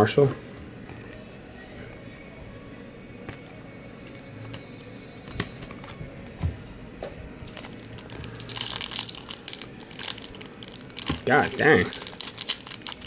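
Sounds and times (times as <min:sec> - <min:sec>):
foil wrapper crinkling: 0:07.4 - 0:13.0.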